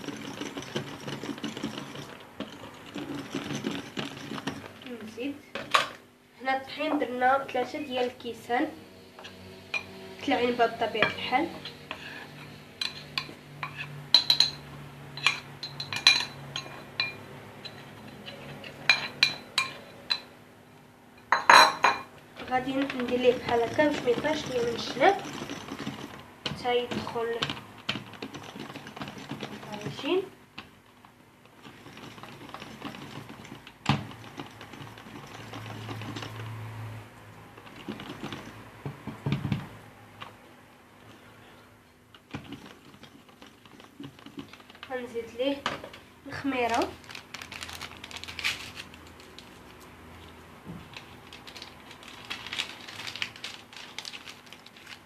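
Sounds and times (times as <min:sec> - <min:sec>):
utensil scraping a bowl: 0:11.1 - 0:14.0
utensil clinking against bowl: 0:12.8 - 0:14.6, 0:15.2 - 0:20.3.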